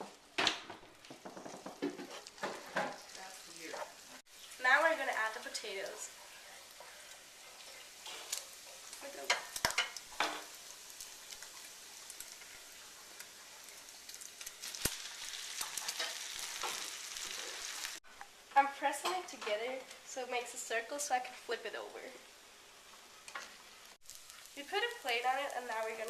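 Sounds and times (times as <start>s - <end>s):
potatoes sizzling in a pan: 0.0s - 26.0s.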